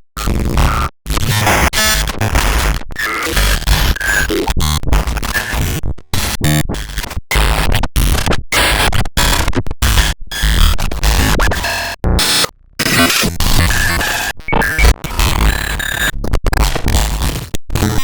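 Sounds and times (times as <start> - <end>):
harsh static bursts: 14.5 - 14.9
stuttering tones: 14.5 - 15.0.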